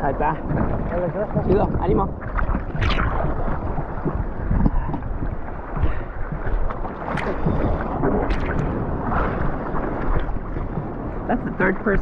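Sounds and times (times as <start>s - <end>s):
sea water sloshing in surf: 0.0s - 12.0s
wind buffeting microphone: 0.0s - 12.0s.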